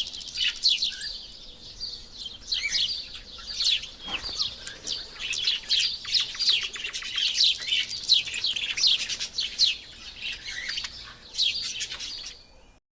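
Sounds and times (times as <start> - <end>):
small birds chirping: 0.0 - 12.8.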